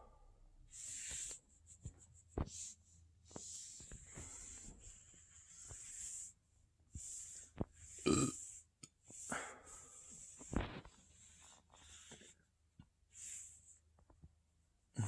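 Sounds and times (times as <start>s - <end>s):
person breathing: 3.6s - 6.3s, 9.1s - 12.5s
person burping: 8.0s - 8.4s.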